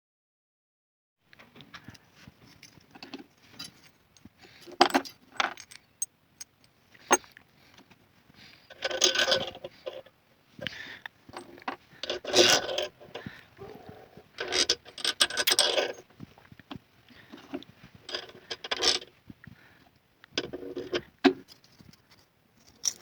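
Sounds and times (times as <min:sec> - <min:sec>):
metal parts and tools clinking: 0:02.5 - 0:07.2, 0:08.7 - 0:10.0, 0:11.4 - 0:13.3, 0:14.4 - 0:16.1, 0:22.6 - 0:23.0.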